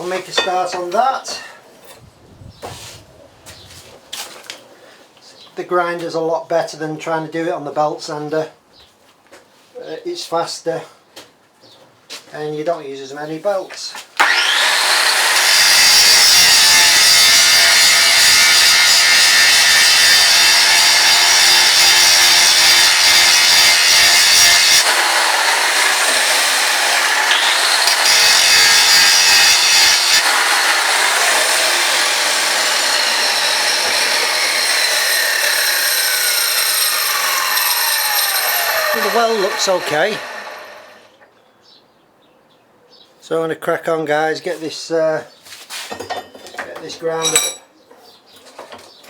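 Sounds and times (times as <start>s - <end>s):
angle grinder grinding steel: 14.2s - 41.1s, 47.2s - 47.6s.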